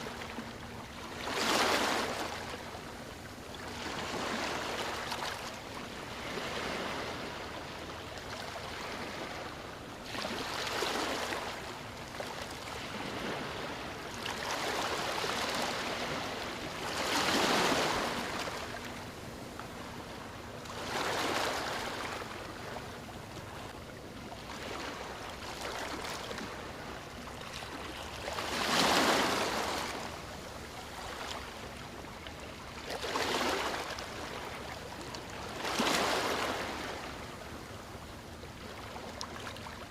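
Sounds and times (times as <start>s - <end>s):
ocean waves breaking on beach: 0.0s - 2.6s, 3.7s - 11.7s, 12.4s - 19.0s, 20.6s - 22.8s, 27.7s - 31.8s.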